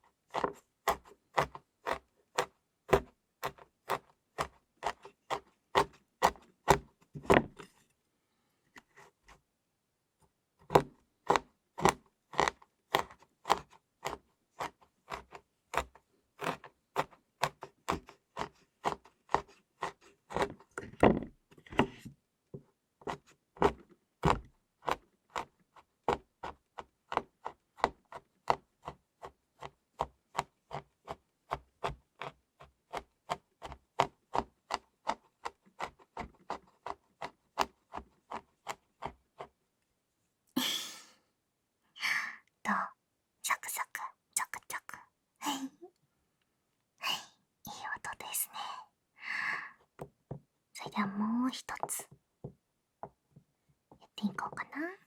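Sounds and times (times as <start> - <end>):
knife chopping on cutting board: 0.4 - 7.6.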